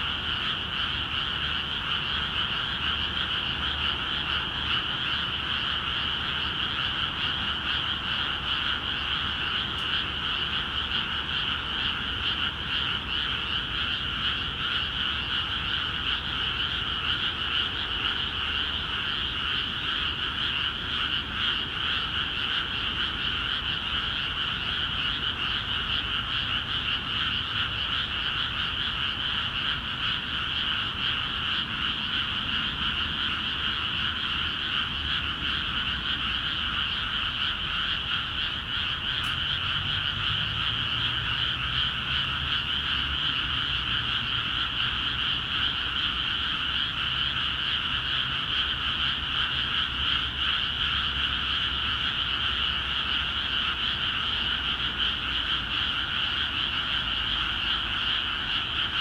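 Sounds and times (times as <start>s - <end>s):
chorus of frogs calling: 0.0s - 59.0s.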